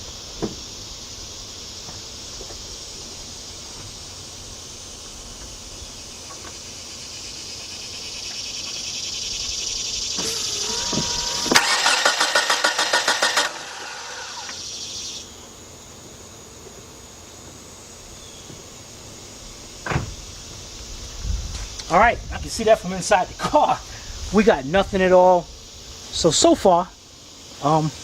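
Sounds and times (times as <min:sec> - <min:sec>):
car engine cranking: 0:10.2 - 0:14.6.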